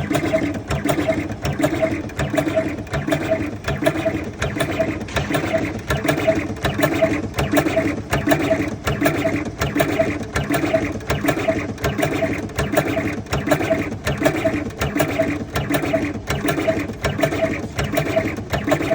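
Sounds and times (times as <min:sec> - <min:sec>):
machine running rhythmically: 0:00.0 - 0:18.9.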